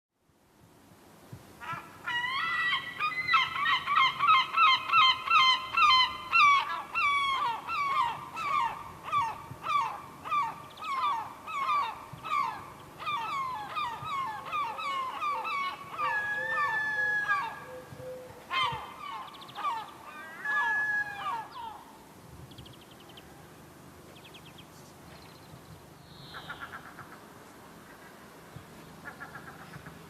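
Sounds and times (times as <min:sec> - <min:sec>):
gull laughing calls: 0:01.6 - 0:21.9.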